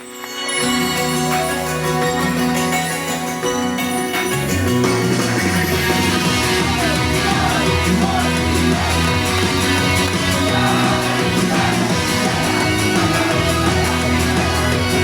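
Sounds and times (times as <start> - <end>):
rock band playing: 0.0 - 15.0
person singing: 5.7 - 15.0.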